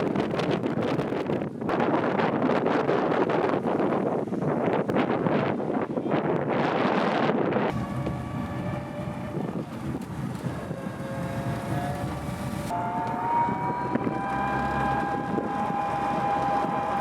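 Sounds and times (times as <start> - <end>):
wind noise on microphone: 0.0 - 17.0
small motor whining: 7.7 - 17.0.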